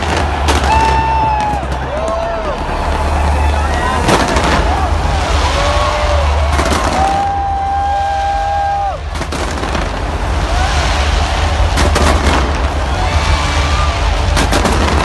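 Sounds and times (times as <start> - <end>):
crowd rumble: 0.0 - 15.0
fireworks banging: 0.0 - 15.0.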